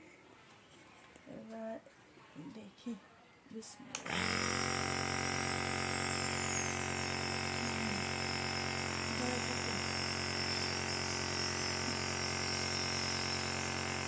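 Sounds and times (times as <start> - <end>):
nebulizer motor humming: 4.0 - 14.0.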